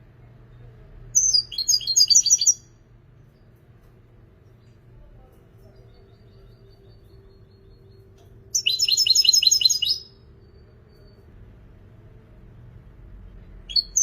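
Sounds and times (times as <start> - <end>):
finch singing: 1.2 - 2.7, 5.6 - 11.3, 13.6 - 14.0.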